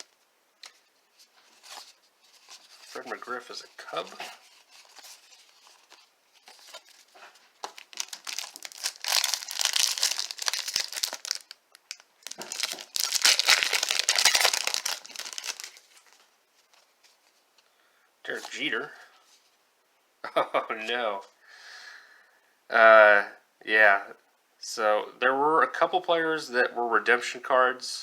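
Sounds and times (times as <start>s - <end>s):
wrapper rustling and crinkling: 0.0s - 17.4s.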